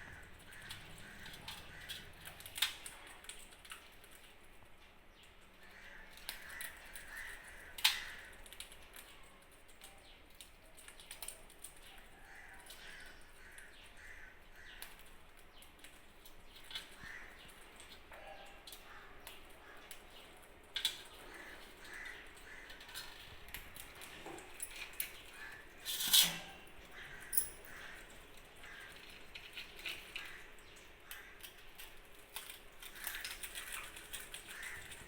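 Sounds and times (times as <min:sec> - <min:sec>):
parrots calling: 0:00.0 - 0:02.6, 0:16.8 - 0:25.9, 0:26.5 - 0:31.5, 0:32.9 - 0:35.0.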